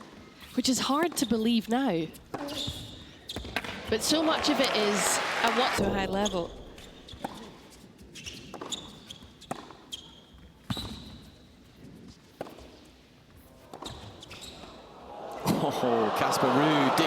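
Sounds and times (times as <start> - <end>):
tennis ball bouncing on court: 2.3 - 4.7, 7.1 - 7.6, 8.4 - 10.0, 12.3 - 12.8, 13.7 - 14.4.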